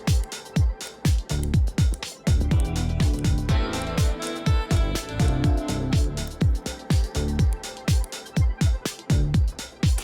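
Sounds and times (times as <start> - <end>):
hi-hats: 0.0 - 10.0
kick drum: 0.0 - 10.0
bass line: 1.3 - 7.7, 9.1 - 9.6.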